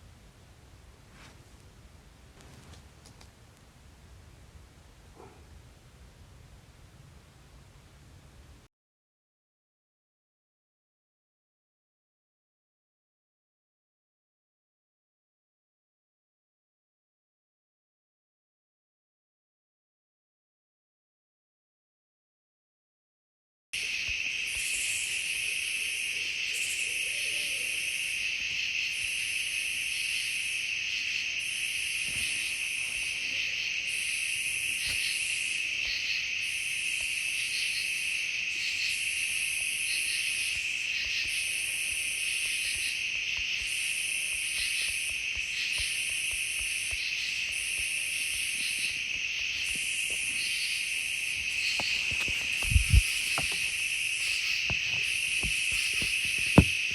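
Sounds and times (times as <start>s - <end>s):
insects pulsing song: 23.8s - 56.9s
insects trilling: 23.8s - 56.9s.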